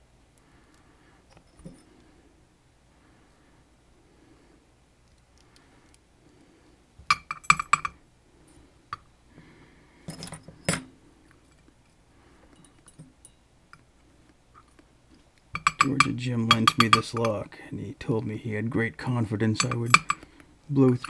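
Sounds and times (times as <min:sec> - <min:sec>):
lock picks clinking in lock: 0:19.6 - 0:20.2.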